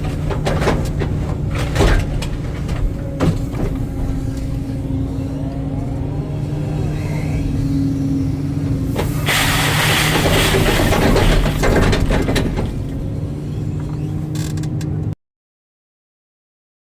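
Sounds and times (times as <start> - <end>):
excavator diesel engine running: 0.0 - 15.2
loud rattling and hissing: 8.9 - 13.0.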